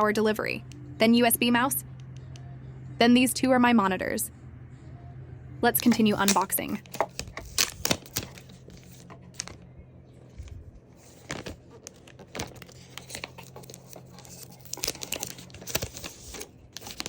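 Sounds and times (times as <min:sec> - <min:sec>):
packaging crinkling and rustling: 0:05.8 - 0:17.0.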